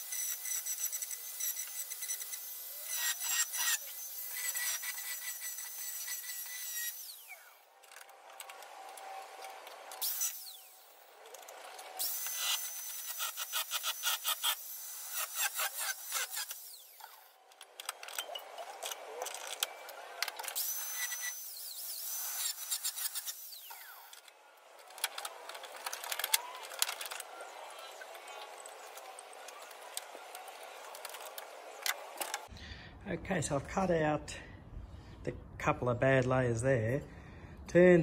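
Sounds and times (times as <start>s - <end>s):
power tool cutting sheet steel: 0.0s - 32.5s.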